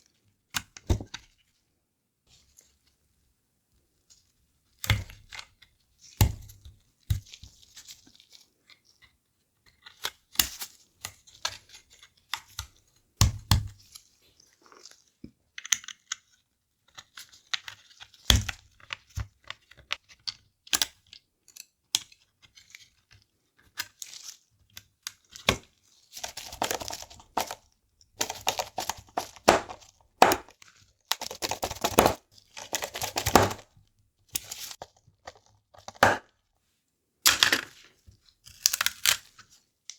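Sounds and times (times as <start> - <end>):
rustling scraping plastic: 26.1 - 33.6
sharp plastic clicks and taps: 28.2 - 30.5.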